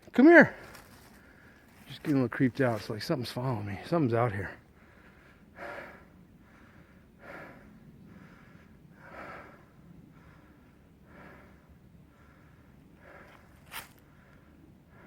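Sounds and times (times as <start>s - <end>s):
person breathing heavily: 0.6s - 1.8s, 4.5s - 15.0s.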